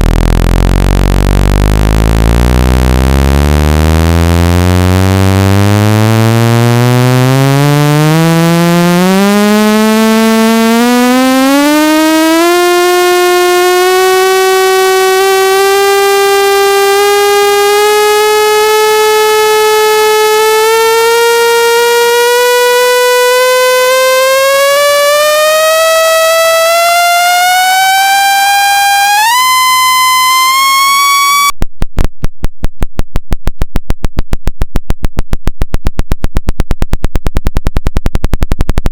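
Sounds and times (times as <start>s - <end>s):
rapid loud clicking pulses: 0.0s - 27.8s
buzzy tone gliding upward: 0.0s - 31.5s.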